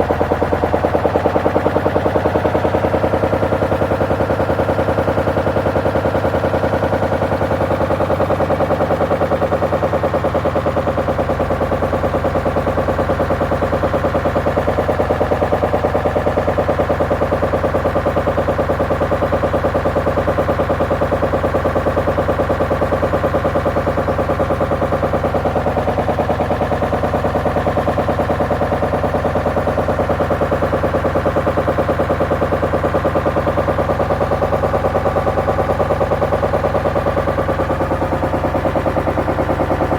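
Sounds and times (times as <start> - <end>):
rapid knocking in washing machine: 0.0 - 39.9
washing machine hum: 24.0 - 39.9.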